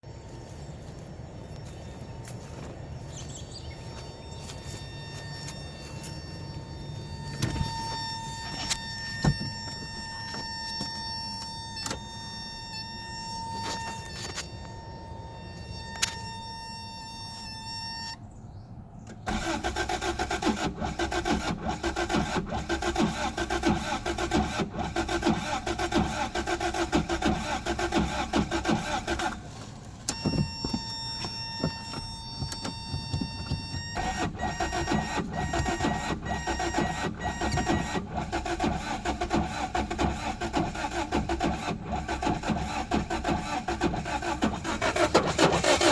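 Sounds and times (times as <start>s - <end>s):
high electrical tones: 3.7s - 18.2s
car engine cranking: 3.9s - 18.2s, 19.0s - 45.9s
clicks: 28.7s - 38.0s.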